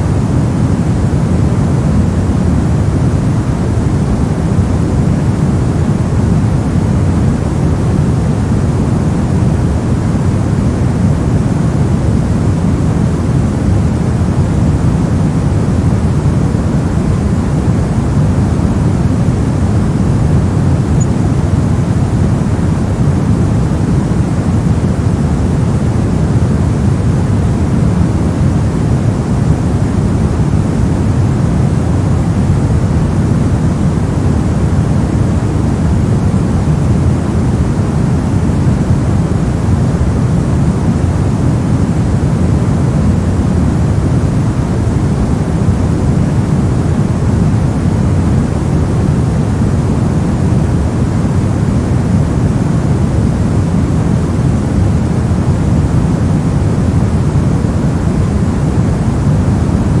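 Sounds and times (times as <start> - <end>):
deep white noise: 0.0 - 60.0.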